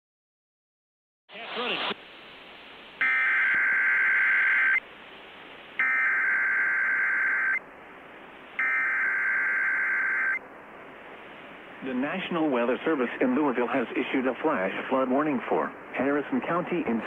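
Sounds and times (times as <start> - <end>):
radio static hiss: 1.3 - 17.0
data burst tones: 3.0 - 4.8, 5.8 - 7.6, 8.6 - 10.4.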